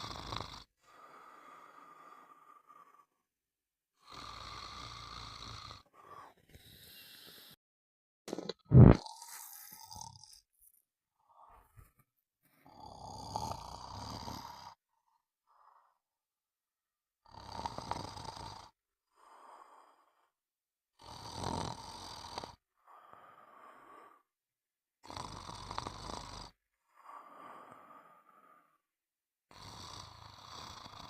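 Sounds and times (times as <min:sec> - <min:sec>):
loud snoring: 0:00.0 - 0:03.0, 0:04.0 - 0:06.0, 0:08.4 - 0:10.4, 0:12.6 - 0:14.8, 0:17.2 - 0:20.1, 0:21.0 - 0:24.2, 0:25.0 - 0:28.7, 0:29.5 - 0:31.0
soft breath sound: 0:00.8 - 0:03.3, 0:05.8 - 0:07.6, 0:11.2 - 0:12.7.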